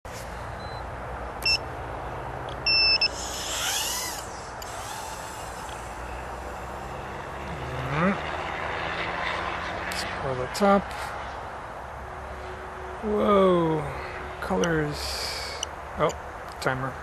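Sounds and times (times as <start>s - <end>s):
high electronic beeps: 2.6s - 3.2s
quadcopter motors whining: 2.7s - 8.3s.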